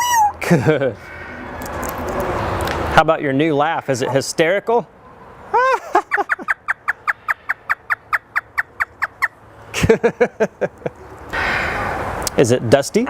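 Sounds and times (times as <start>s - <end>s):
parrot mimicking laughter: 0.0s - 0.5s, 5.5s - 9.3s.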